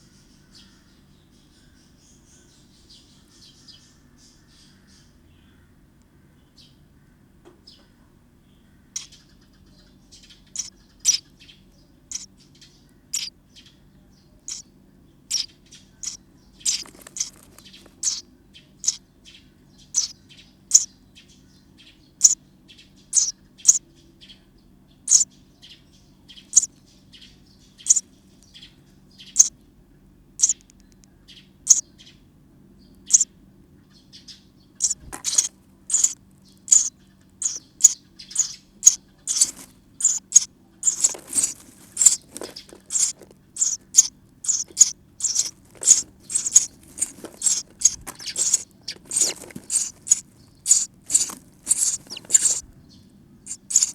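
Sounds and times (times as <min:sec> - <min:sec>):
nestlings chirping: 0:08.9 - 0:09.4, 0:10.1 - 0:13.7, 0:14.4 - 0:23.8, 0:25.0 - 0:29.6, 0:30.4 - 0:32.1, 0:32.8 - 0:33.3, 0:34.0 - 0:53.9.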